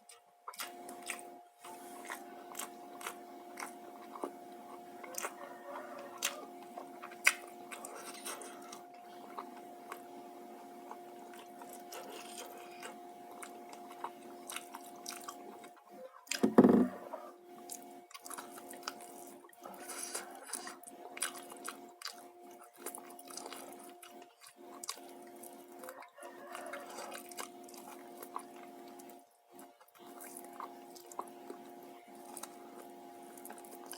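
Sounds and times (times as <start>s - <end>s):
faint steady hum: 0.0s - 33.9s
person chewing: 0.0s - 33.9s
muffled thump: 16.4s - 16.9s.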